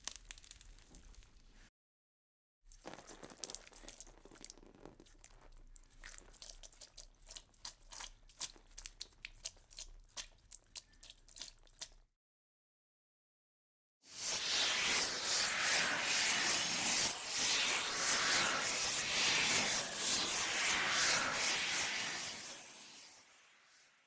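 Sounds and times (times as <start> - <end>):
sharp crunches and snaps: 0.0 - 1.7, 2.7 - 12.0.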